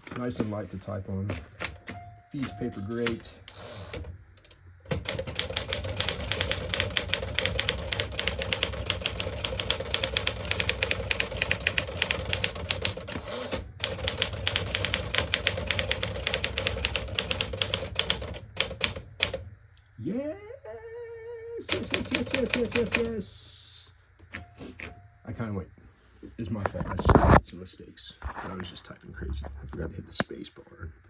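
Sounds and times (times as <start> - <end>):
manual typewriter clatter: 4.9 - 19.4, 21.7 - 23.2.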